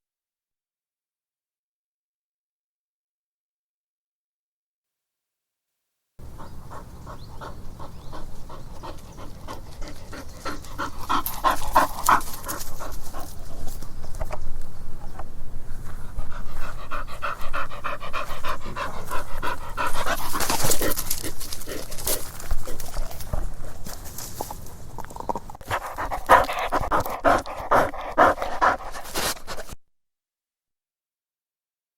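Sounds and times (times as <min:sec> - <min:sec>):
dog panting hard: 0:06.2 - 0:13.8, 0:16.0 - 0:23.6, 0:25.6 - 0:29.8.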